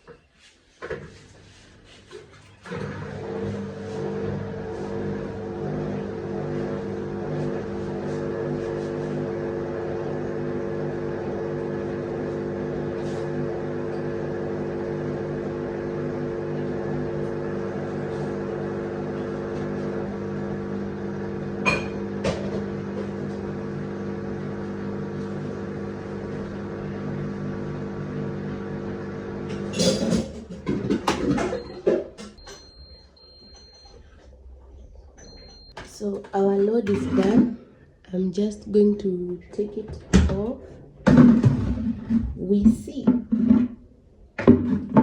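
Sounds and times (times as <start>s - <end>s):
washer dryer humming: 0.9s - 45.0s.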